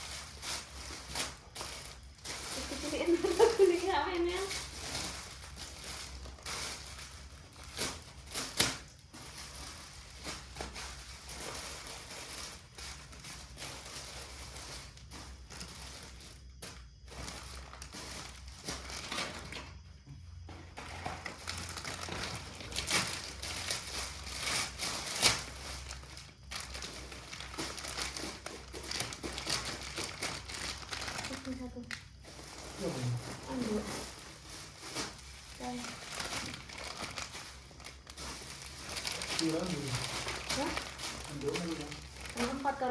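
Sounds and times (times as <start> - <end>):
plastic packaging crinkling: 0.0 - 19.8, 20.8 - 42.9.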